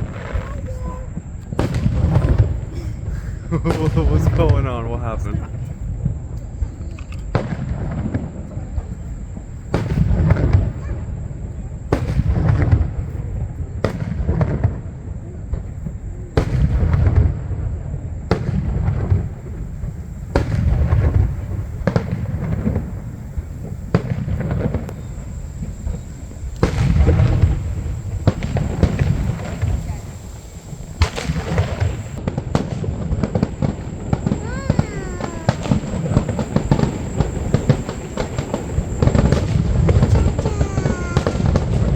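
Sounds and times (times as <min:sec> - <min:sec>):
fireworks booming: 0:00.0 - 0:41.9.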